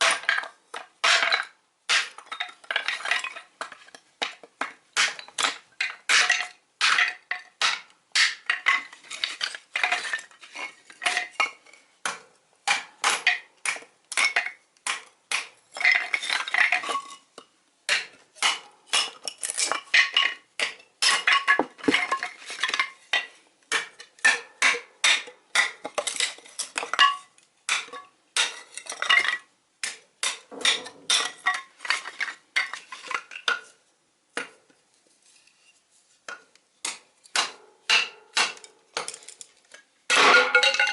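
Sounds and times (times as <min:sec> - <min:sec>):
tin cans clicking and clanking: 0:40.1 - 0:40.9.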